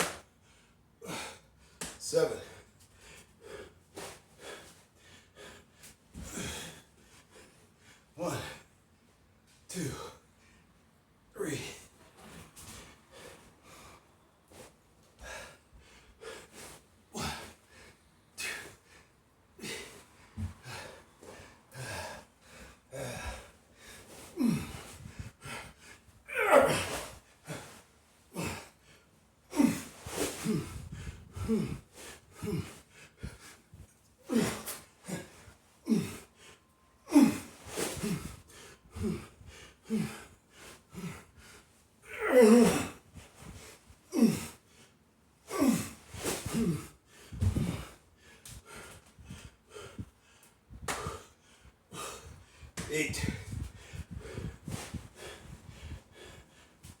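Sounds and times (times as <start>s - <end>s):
man breathing hard: 0.4s - 8.7s, 12.6s - 57.0s
man grunting: 8.2s - 8.6s, 9.7s - 10.2s, 11.4s - 11.8s, 24.4s - 24.8s, 26.3s - 27.6s, 29.5s - 30.7s, 32.4s - 32.7s, 34.3s - 35.3s, 35.9s - 36.2s, 37.1s - 38.2s, 42.1s - 43.0s, 44.1s - 44.5s, 45.5s - 45.9s, 52.8s - 53.5s.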